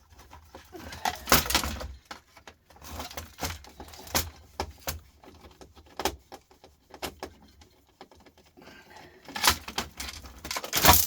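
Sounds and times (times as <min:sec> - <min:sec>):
plastic parts clicking and clattering: 0:00.1 - 0:06.2, 0:09.2 - 0:11.0.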